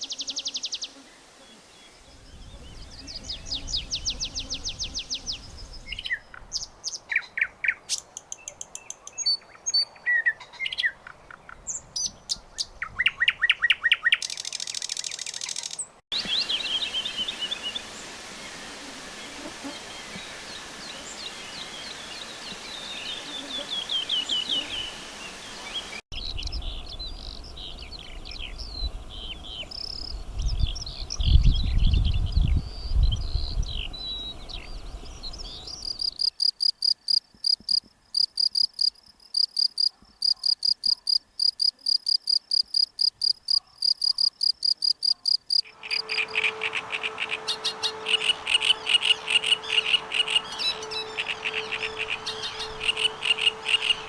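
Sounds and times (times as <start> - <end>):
bird singing: 1.8 - 17.8, 25.7 - 54.0
rapid high chirps: 35.8 - 47.4.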